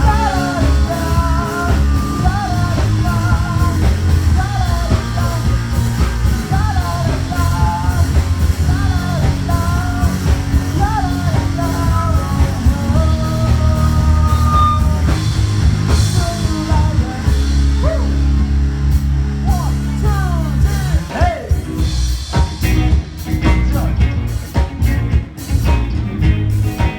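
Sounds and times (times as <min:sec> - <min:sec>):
drum hits: 0:00.0 - 0:18.0
wavering lead melody: 0:00.0 - 0:20.7
rock band music: 0:00.0 - 0:26.9.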